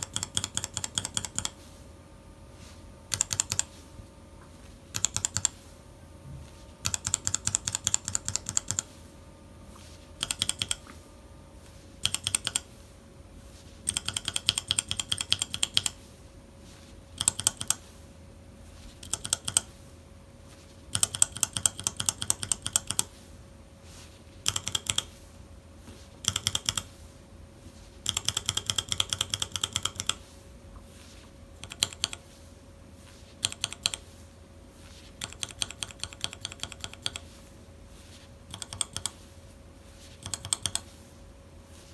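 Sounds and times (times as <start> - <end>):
faint steady hum: 0.0 - 41.9
mechanical keyboard keystrokes clacking: 3.1 - 3.7, 5.0 - 5.5.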